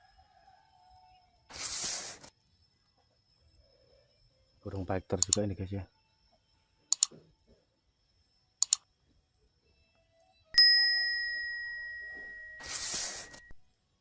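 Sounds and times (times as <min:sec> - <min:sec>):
quick sharp clicks: 0:05.2 - 0:05.5, 0:06.9 - 0:07.2, 0:08.6 - 0:08.9
bright metallic ding: 0:10.6 - 0:13.5
rustling noise: 0:12.3 - 0:13.5.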